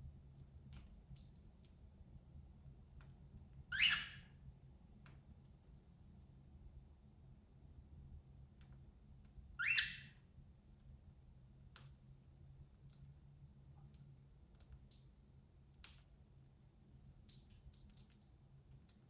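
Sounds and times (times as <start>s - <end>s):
cockatiel chirp: 3.7s - 4.3s, 9.6s - 10.2s.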